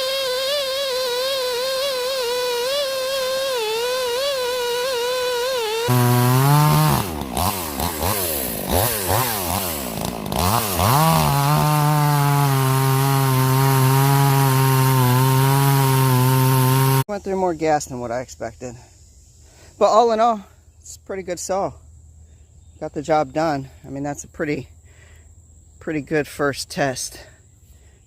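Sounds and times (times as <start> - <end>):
chainsaw cutting wood: 0.0 - 17.1.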